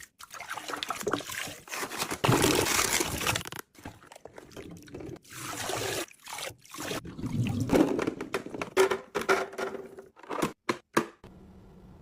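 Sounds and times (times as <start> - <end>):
containers clicking and knocking: 7.7 - 11.2.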